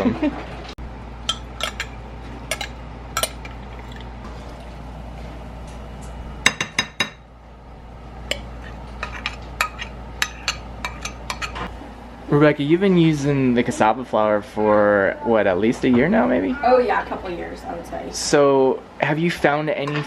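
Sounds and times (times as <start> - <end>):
utensils and dishes clinking: 0.0 - 4.7, 8.2 - 11.7, 19.7 - 20.0.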